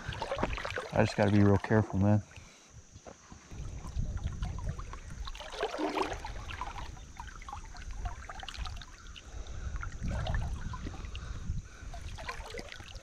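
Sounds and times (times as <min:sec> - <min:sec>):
person wading through water splashing: 0:00.0 - 0:02.4, 0:03.2 - 0:13.0
floodwater rushing: 0:04.4 - 0:09.0.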